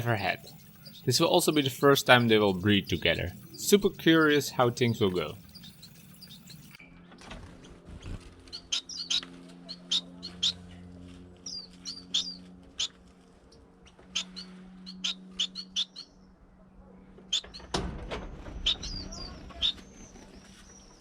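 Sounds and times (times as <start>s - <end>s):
finches chirping: 0.0s - 6.8s, 8.5s - 10.8s, 11.4s - 12.9s, 13.9s - 16.3s, 18.6s - 21.0s.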